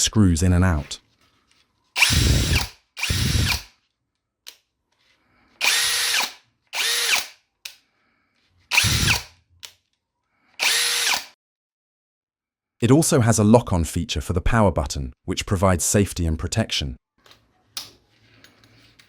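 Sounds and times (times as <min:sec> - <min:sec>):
impact drill spinning: 0:02.0 - 0:03.8, 0:05.6 - 0:07.4, 0:08.7 - 0:09.4, 0:10.6 - 0:11.4.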